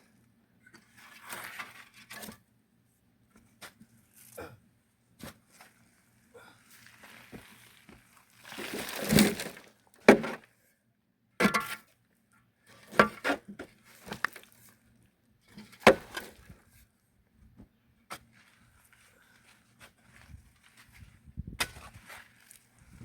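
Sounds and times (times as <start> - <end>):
digging tool scraping soil: 7.0 - 9.7
blade striking earth: 8.6 - 10.4, 21.5 - 22.1.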